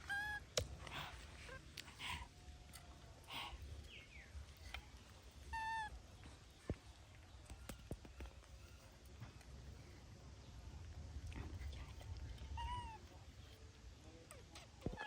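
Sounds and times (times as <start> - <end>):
baby monkey squealing: 0.0 - 0.4.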